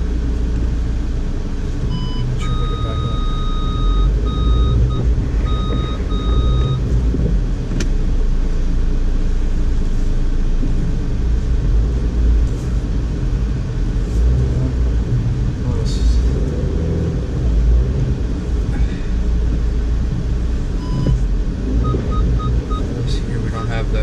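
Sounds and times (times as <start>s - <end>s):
car driving through deep snow: 0.0s - 24.0s
electronic beep: 1.9s - 6.8s, 20.8s - 21.2s, 21.8s - 22.9s.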